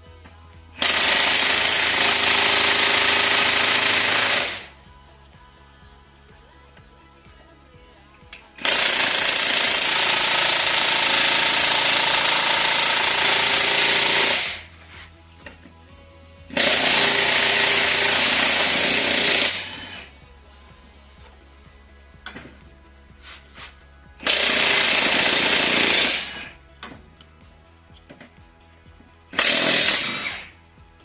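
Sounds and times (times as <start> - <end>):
impact wrench hammering: 0.8 - 4.8, 8.2 - 14.7, 16.5 - 20.1, 22.2 - 22.7, 24.2 - 27.3, 29.0 - 30.5.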